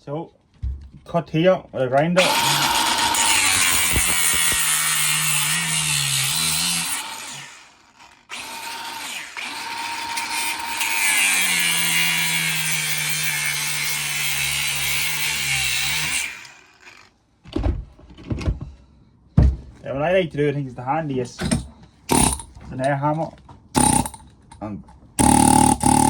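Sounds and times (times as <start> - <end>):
angle grinder cutting metal: 2.2 - 17.1, 22.1 - 22.5, 23.8 - 24.2, 25.2 - 26.0.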